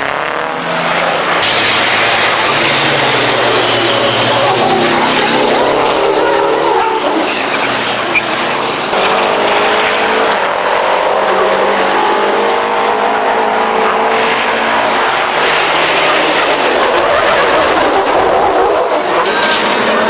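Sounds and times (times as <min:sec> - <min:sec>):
race truck engines running hard: 0:00.0 - 0:20.0
road and exhaust noise: 0:00.0 - 0:20.0.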